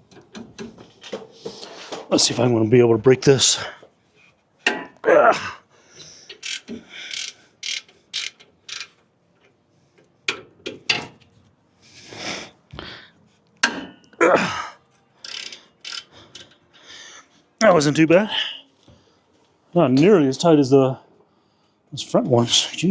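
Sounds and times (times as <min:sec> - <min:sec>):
ratchet clicks: 0:06.3 - 0:09.0, 0:15.2 - 0:16.6
metal clanks: 0:13.6 - 0:14.2.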